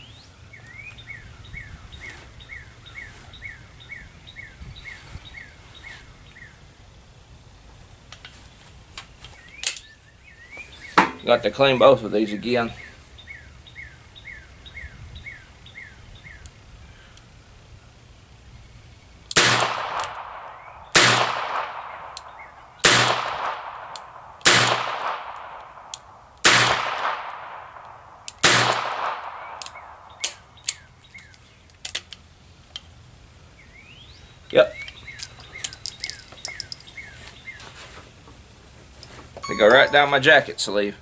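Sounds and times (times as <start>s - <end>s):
revolver shots ringing: 39.4s - 40.4s.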